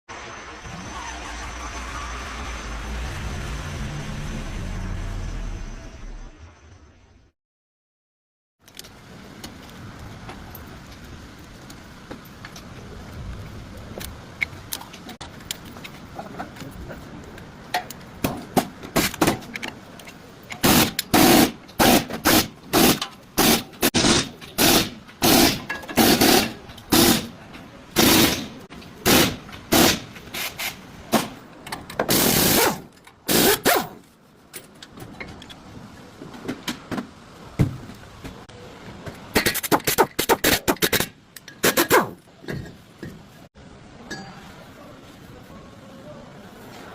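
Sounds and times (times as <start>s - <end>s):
brakes grinding metal on metal: 0.2s - 6.6s.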